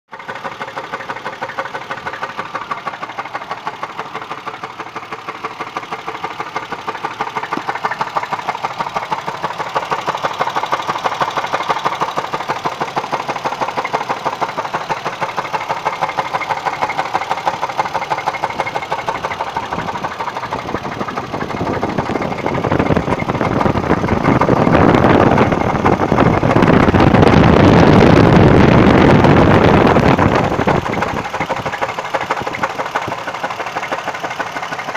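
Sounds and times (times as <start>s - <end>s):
engine knocking: 0.1s - 34.9s.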